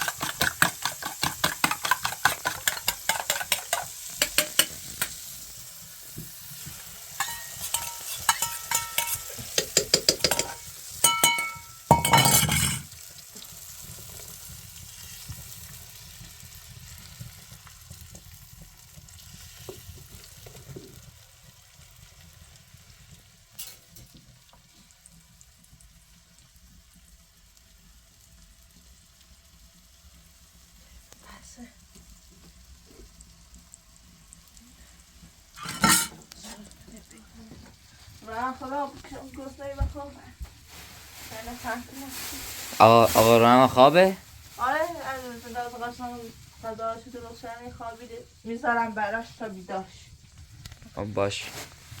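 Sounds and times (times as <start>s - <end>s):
metal spoon scraping a pot: 0.0s - 5.2s, 7.1s - 12.9s, 35.6s - 36.6s
low steady sizzle: 0.0s - 52.0s.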